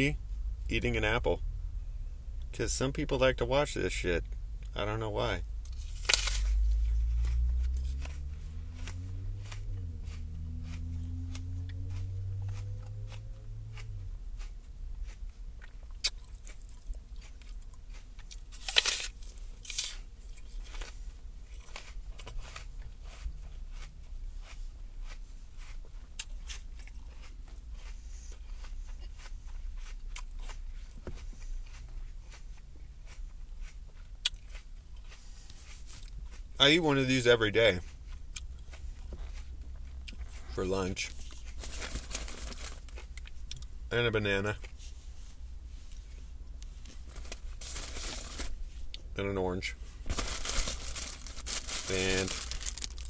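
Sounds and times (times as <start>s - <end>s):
low droning hum: 0.0s - 19.7s, 37.6s - 53.0s
person chewing a crisp apple: 3.9s - 53.0s.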